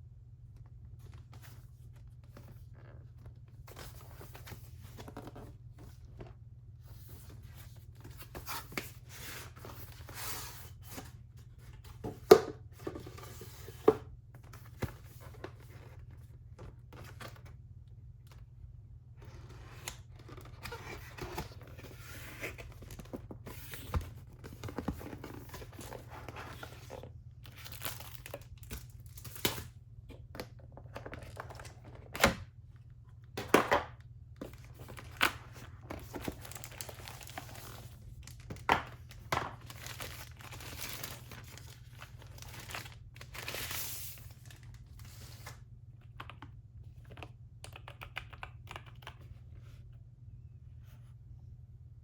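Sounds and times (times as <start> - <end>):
packaging rustling and tearing: 19.7 - 29.7, 34.4 - 45.5.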